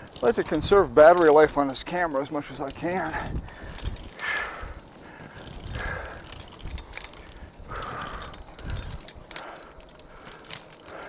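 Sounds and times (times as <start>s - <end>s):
climbing gear clinking: 0.0s - 11.0s
heavy laboured breathing: 2.9s - 11.0s.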